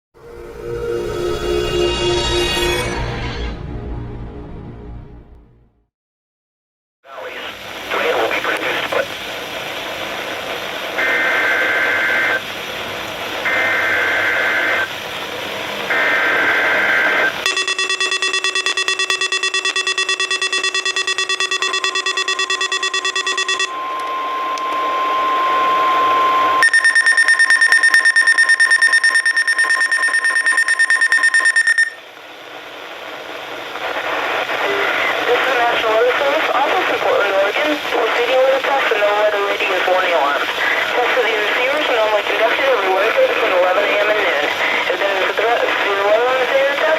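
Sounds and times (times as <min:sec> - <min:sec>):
radio static: 0:07.1 - 0:23.8, 0:32.5 - 0:46.9
weather alert receiver alarms: 0:15.9 - 0:32.0
warbling two-tone data bursts: 0:16.0 - 0:24.4, 0:26.6 - 0:32.0.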